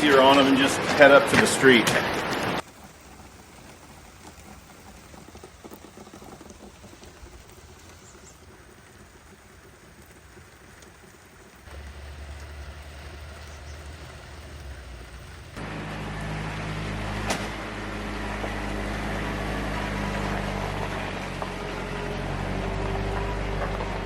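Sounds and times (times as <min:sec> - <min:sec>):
steady rain falling: 0:00.0 - 0:24.0
low steady rumble: 0:05.9 - 0:24.0.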